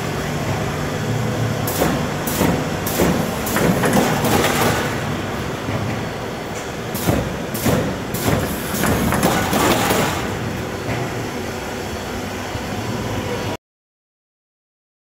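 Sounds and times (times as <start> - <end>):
machine running: 0.0 - 13.6.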